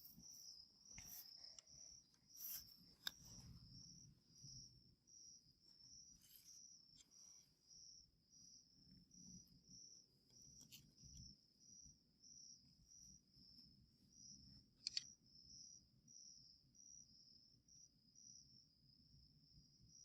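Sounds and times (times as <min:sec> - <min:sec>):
cricket chirping: 0:00.0 - 0:20.0
soft clicks: 0:14.8 - 0:15.1.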